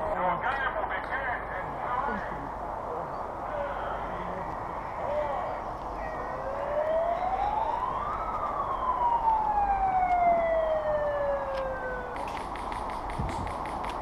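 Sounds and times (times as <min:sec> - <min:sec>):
siren winding up and down: 0:06.3 - 0:12.8
quick clicks: 0:11.6 - 0:14.0.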